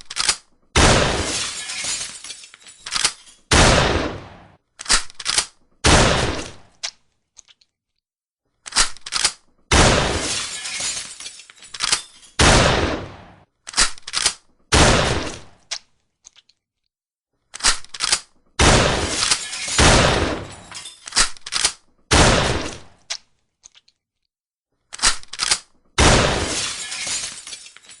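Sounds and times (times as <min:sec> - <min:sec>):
shotgun blasts: 0:00.8 - 0:01.4, 0:03.5 - 0:04.6, 0:05.8 - 0:06.7, 0:09.7 - 0:10.4, 0:12.4 - 0:13.4, 0:14.7 - 0:15.6, 0:18.6 - 0:20.7, 0:22.1 - 0:23.0, 0:26.0 - 0:26.7.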